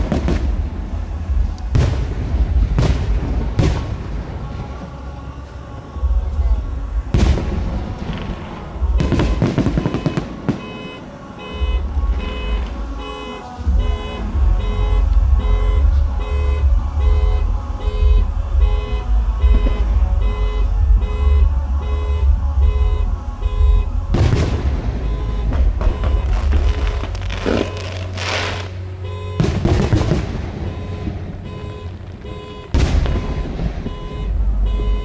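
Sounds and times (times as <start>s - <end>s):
low rumble: 0.0s - 10.6s, 11.6s - 35.0s
fireworks bangs and crackling: 0.0s - 35.0s
electronic beeps: 9.0s - 35.0s.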